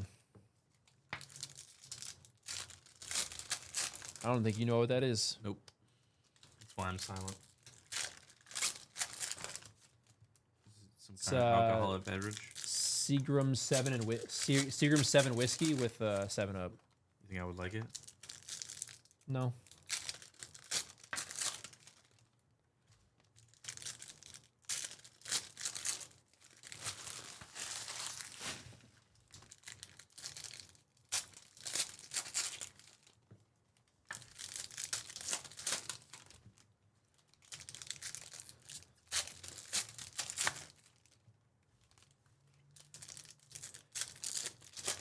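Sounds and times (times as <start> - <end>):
foil wrappers tearing and crinkling: 1.2 - 4.6, 6.4 - 10.0, 11.8 - 16.4, 17.9 - 22.3, 23.3 - 33.2, 34.0 - 36.6, 37.2 - 41.2, 42.8 - 45.0.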